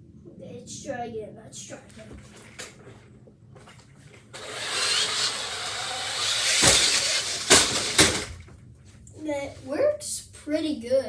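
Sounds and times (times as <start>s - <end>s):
toy car knocking: 4.4s - 8.4s
toy car motor running: 4.4s - 8.4s.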